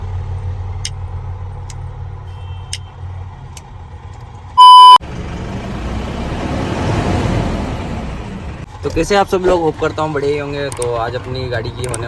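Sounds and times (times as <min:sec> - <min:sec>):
loud electronic beep: 0:04.6 - 0:05.0.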